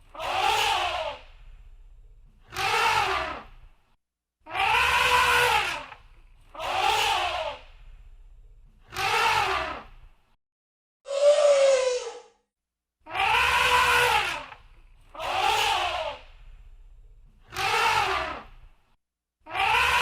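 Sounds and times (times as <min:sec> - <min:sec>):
elephant trumpeting: 0:04.6 - 0:05.9, 0:13.2 - 0:14.5.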